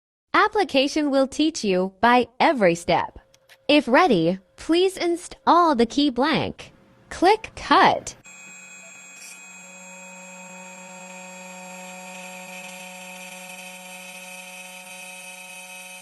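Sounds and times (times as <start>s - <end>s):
key cutting machine motor whine: 8.2s - 16.0s.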